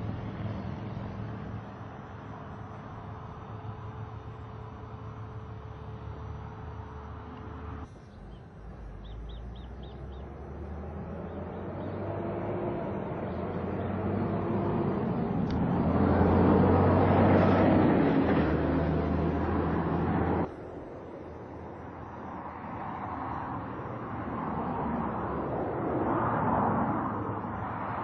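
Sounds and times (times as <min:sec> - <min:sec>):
motor vehicle rumble: 0:00.0 - 0:28.0
bird chirping: 0:08.0 - 0:12.4.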